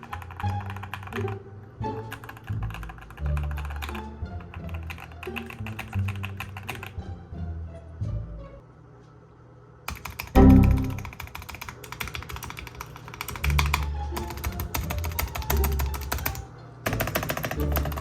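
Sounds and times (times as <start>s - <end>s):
mechanical keyboard typing: 0.0s - 1.4s, 2.0s - 7.0s, 9.9s - 18.0s
background music with bass: 10.4s - 11.0s.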